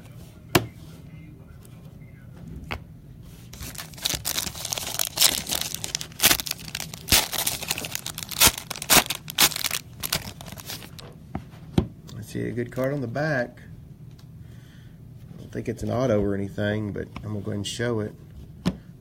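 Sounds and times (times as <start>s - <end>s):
plastic wrapper crinkling and tearing: 3.6s - 11.1s.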